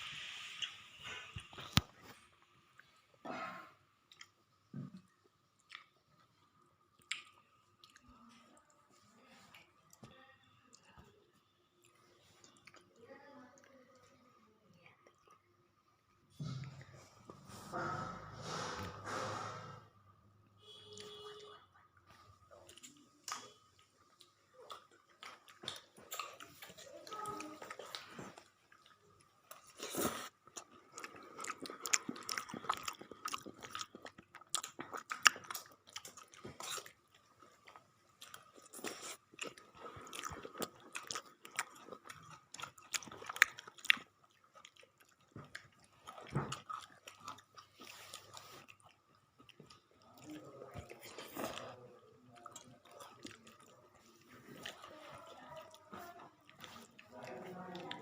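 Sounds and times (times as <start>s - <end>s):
person chewing crunchy food: 4.0s - 8.7s, 22.0s - 58.0s.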